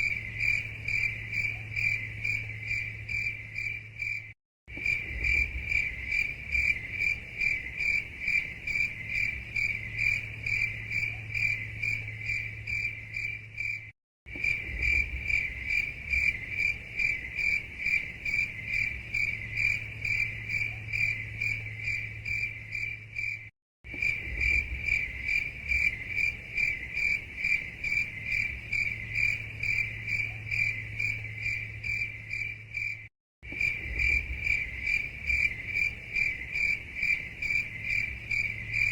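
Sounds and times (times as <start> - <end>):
crickets chirping: 0.0 - 38.9.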